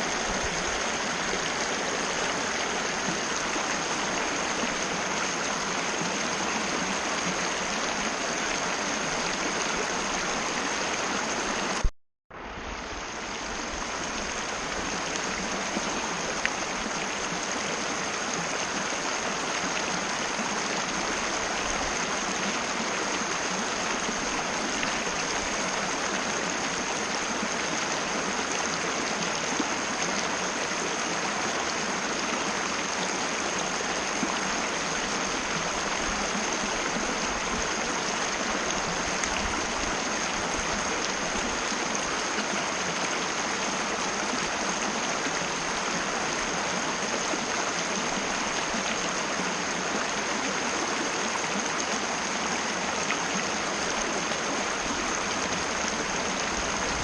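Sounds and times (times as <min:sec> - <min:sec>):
river rushing over rocks: 0:00.0 - 0:57.0.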